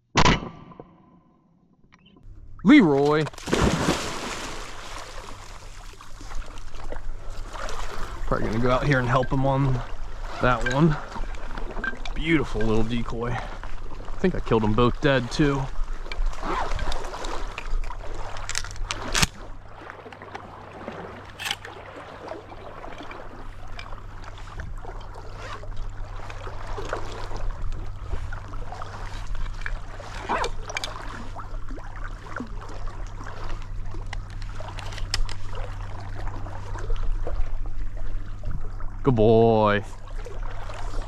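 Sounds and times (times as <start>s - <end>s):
steady low hum: 2.2s - 41.0s
water splashing off paddle: 2.8s - 11.9s.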